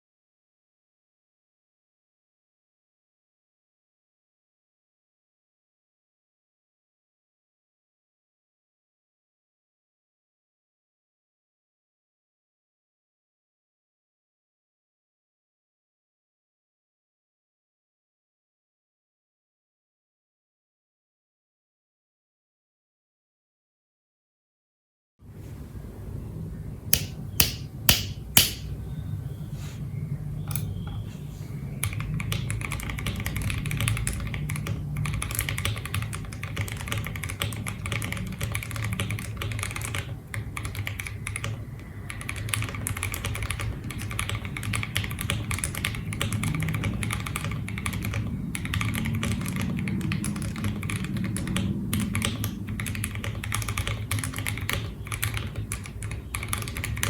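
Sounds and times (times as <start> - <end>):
mechanical keyboard typing: 31.8 - 57.0.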